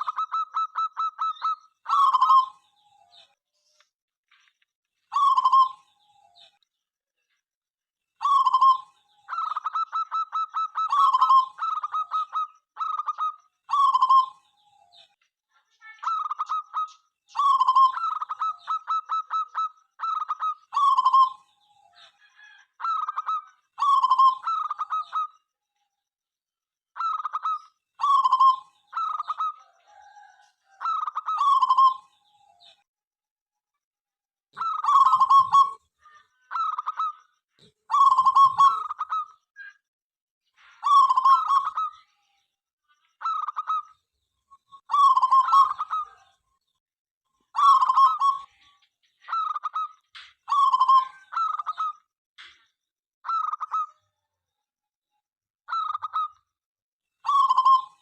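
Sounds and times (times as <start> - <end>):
dove cooing: 5.1 - 5.8, 8.2 - 14.4, 22.4 - 25.3, 27.0 - 32.1, 34.6 - 35.8, 37.9 - 39.3, 44.9 - 46.3, 47.6 - 48.5, 57.3 - 58.0.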